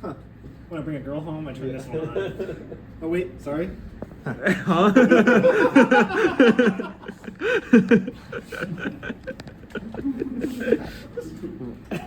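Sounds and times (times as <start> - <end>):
men chuckling and laughing: 2.0 - 2.9, 4.2 - 12.0.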